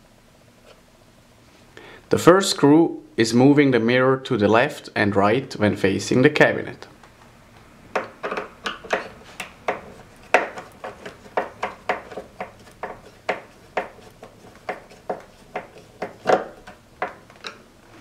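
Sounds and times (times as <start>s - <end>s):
screwdriver clicking and scraping: 8.0s - 17.6s.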